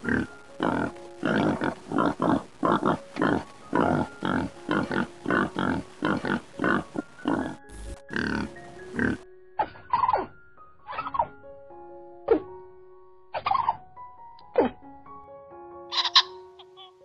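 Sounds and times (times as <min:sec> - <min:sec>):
animal grunting harshly: 0:00.0 - 0:10.0.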